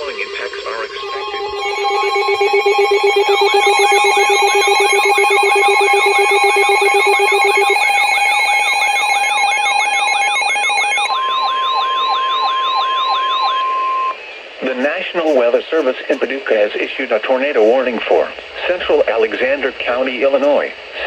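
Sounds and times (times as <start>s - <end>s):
steady buzzing tones: 0.0s - 9.9s
steady warning alarm tone: 0.0s - 18.0s
rapid sweeping siren yelp: 0.8s - 15.4s.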